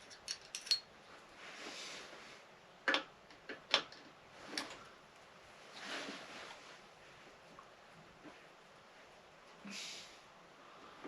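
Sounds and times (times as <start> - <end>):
clicks and clinks of metal tools: 0.0 - 0.9
soft rustle: 1.0 - 2.6, 4.2 - 11.0.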